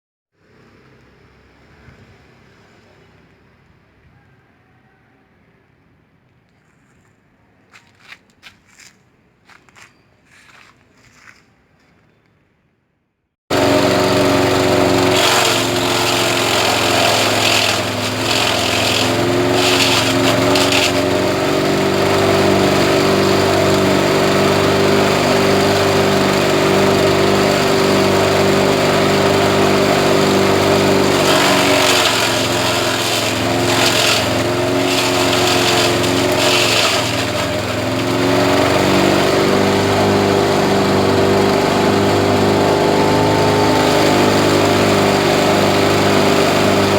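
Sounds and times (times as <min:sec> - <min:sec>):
grass chopper machine running: 0:13.5 - 0:46.9.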